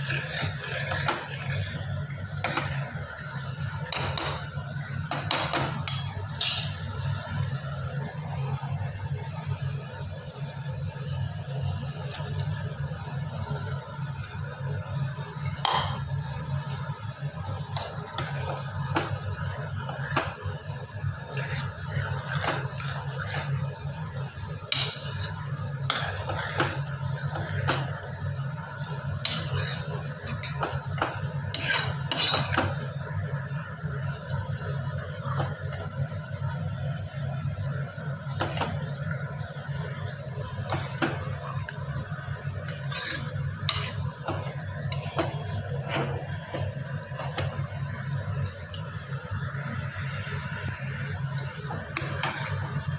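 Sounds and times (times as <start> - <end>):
steady low hum: 0.0 - 52.9
utensils clinking against dishes: 5.1 - 6.8.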